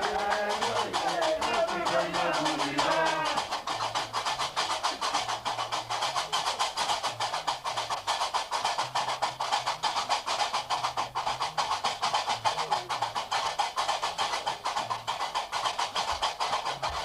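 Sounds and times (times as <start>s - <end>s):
iron castanets clacking: 0.0s - 17.0s.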